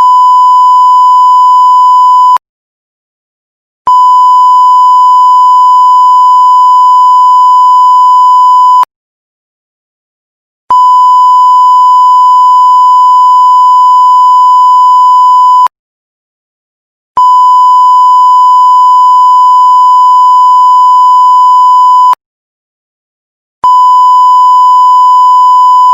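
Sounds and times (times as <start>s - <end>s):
censor beep tone: 0.0s - 2.4s, 3.9s - 8.9s, 10.7s - 15.7s, 17.2s - 22.2s, 23.6s - 25.9s.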